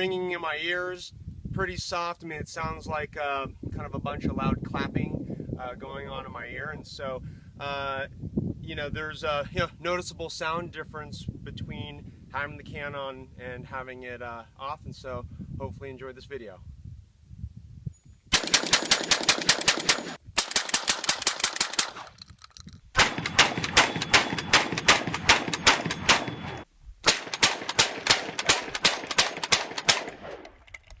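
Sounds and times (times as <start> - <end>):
shotgun shots: 18.3 - 22.2, 23.0 - 30.5.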